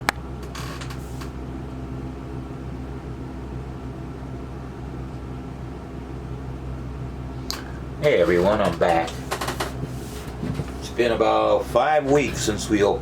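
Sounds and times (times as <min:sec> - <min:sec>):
electrical hum: 0:00.0 - 0:13.0
fan-like hiss: 0:07.2 - 0:13.0
scratchy rustle: 0:09.0 - 0:10.9.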